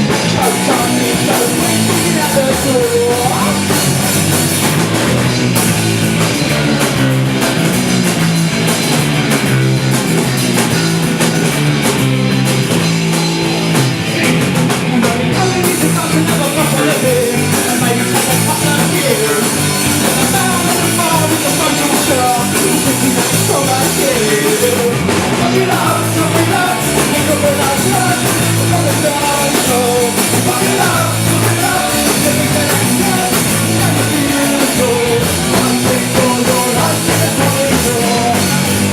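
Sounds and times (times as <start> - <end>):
drum kit: 0.0 - 38.9
rock band playing live: 0.0 - 38.9
person singing: 0.1 - 3.8, 14.8 - 38.9.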